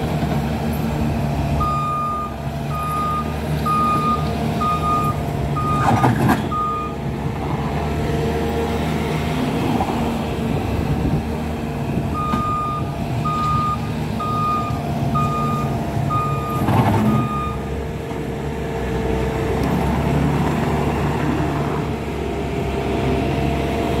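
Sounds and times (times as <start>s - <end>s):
diesel engine running: 0.0s - 24.0s
reversing alarm beeps: 1.6s - 7.0s, 12.2s - 17.7s.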